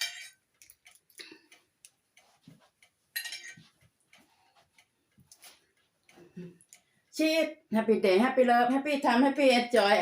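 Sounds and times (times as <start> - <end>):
cutlery clinking on dishes: 0.0 - 0.4, 3.2 - 3.7.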